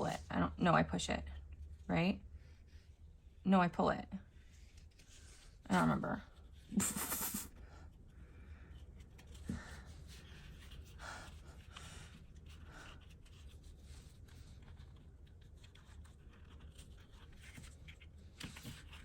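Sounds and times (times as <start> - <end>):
low steady hum: 0.0 - 19.0
paper rustling and folding: 8.8 - 19.0.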